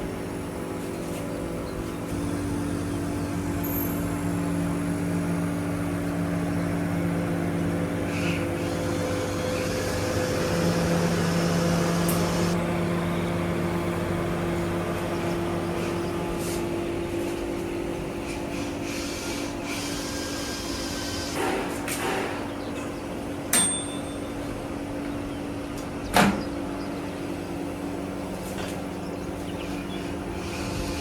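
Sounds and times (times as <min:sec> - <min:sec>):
steady mechanical hum: 0:00.0 - 0:31.0
sharp metallic clink: 0:03.6 - 0:04.2, 0:23.5 - 0:24.4.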